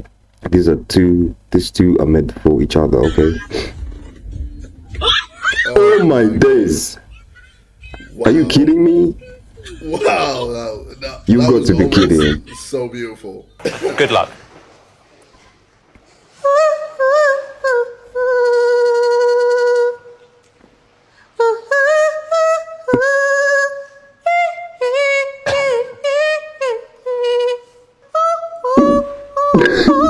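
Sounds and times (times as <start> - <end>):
rough low sound: 2.6 - 12.7.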